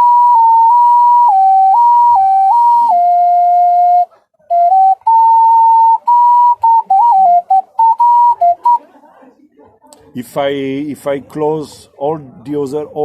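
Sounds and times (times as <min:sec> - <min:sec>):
ocarina melody: 0:00.0 - 0:08.9.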